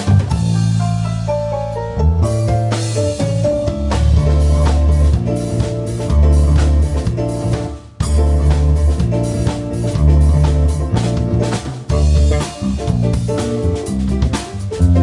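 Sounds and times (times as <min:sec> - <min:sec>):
drum kit: 0:00.0 - 0:15.0
instrumental rock band: 0:00.0 - 0:15.0.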